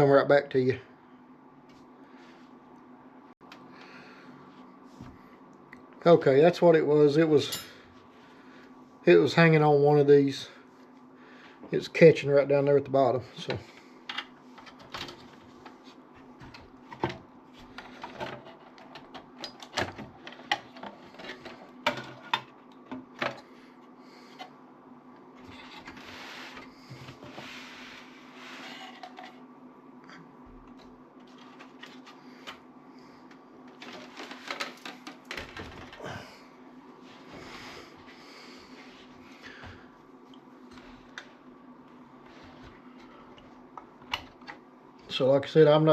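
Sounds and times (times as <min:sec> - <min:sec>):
faint steady hum: 0:00.0 - 0:45.9
computer parts clicking and clattering: 0:33.7 - 0:36.0.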